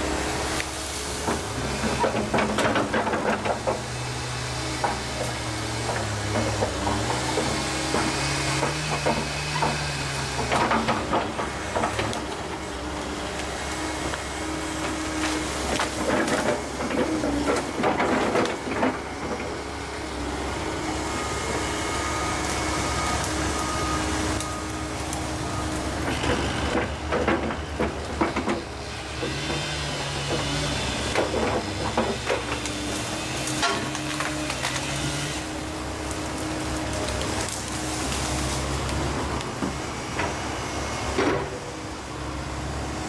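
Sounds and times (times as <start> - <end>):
excavator running: 0.0 - 43.0
wood and branches breaking: 14.8 - 19.0, 31.1 - 39.6.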